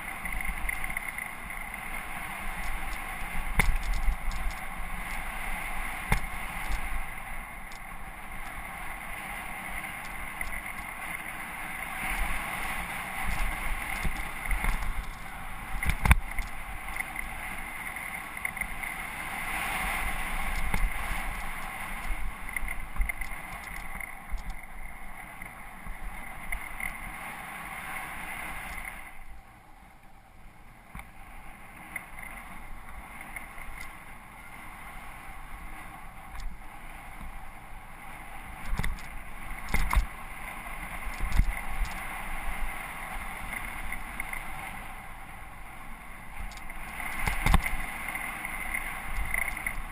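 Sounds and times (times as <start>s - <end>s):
bike knocking and rattling: 0.0s - 8.7s, 9.8s - 19.1s, 20.2s - 24.8s, 38.6s - 40.2s, 41.0s - 42.1s, 46.4s - 47.9s
wind on microphone: 0.0s - 18.1s, 18.7s - 25.2s, 38.2s - 49.9s
bike tyres rolling on dirt: 0.0s - 29.7s, 30.5s - 49.9s.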